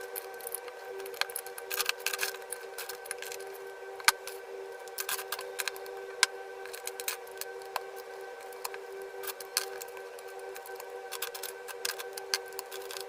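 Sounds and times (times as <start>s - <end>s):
plastic bricks clicking and rattling: 10.6s - 13.0s.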